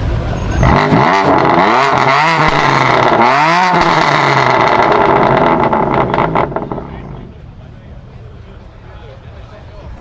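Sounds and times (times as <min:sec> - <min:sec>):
car engine revving: 0:00.0 - 0:07.4
exhaust crackles: 0:00.0 - 0:07.6.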